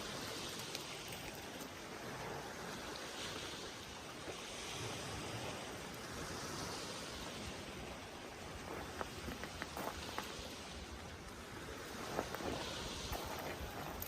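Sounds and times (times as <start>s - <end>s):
faint light ticks: 0.4s - 1.7s.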